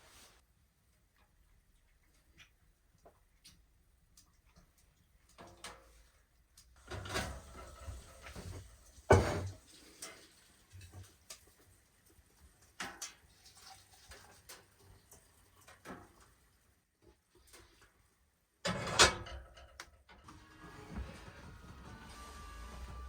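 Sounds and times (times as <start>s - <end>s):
knocks and clunks: 9.1s - 9.6s.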